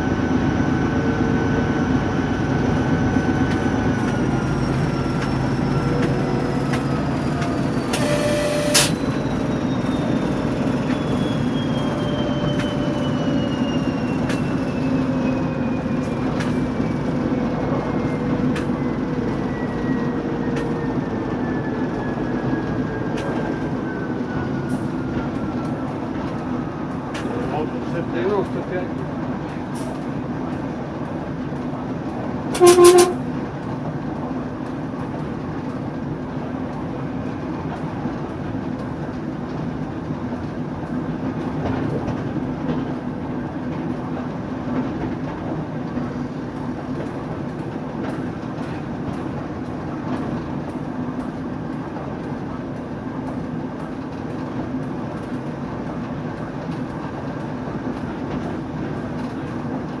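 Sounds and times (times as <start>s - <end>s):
diesel locomotive engine running: 0.0s - 60.0s
locomotive horn blast: 7.9s - 9.1s, 32.5s - 33.3s.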